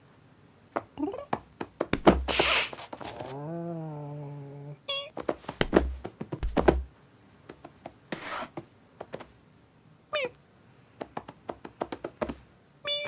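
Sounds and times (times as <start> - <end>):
rustle: 2.2 - 4.5
cat meowing: 2.3 - 5.2, 10.1 - 10.4
knocks and clicks: 5.6 - 6.9.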